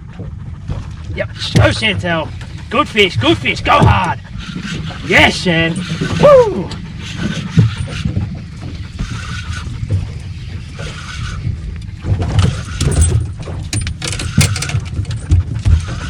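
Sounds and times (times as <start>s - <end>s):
water noise around boat: 0.0s - 16.0s
sharp clicks and knocks: 11.8s - 16.0s.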